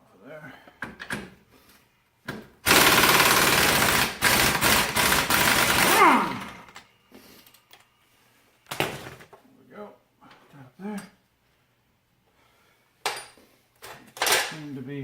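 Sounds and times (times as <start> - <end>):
impact wrench hammering: 2.6 - 6.8.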